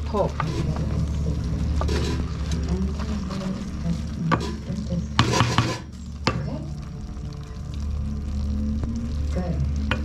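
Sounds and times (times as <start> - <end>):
rice stirred in a pot: 0.0 - 8.0
steady low hum: 0.0 - 10.0.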